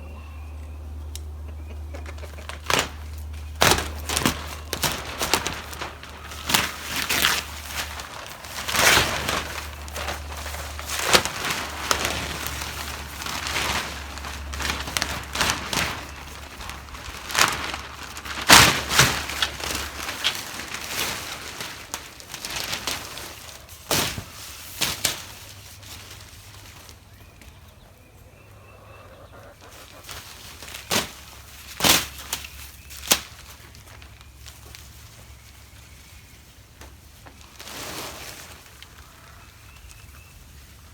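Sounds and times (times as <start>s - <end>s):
stiff plastic crackling and snapping: 2.0s - 27.5s, 30.0s - 34.9s.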